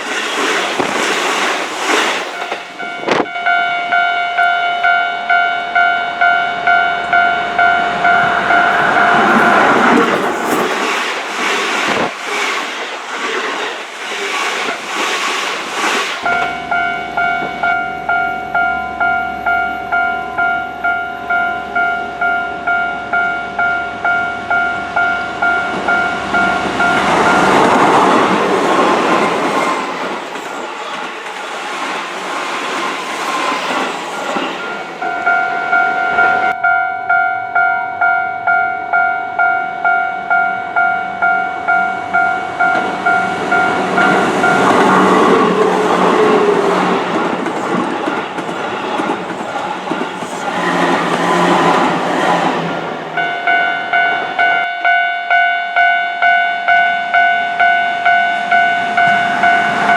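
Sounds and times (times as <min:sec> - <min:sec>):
electric trains passing: 0:00.0 - 0:59.9
level crossing bell ringing: 0:02.4 - 0:10.7, 0:53.2 - 0:59.9.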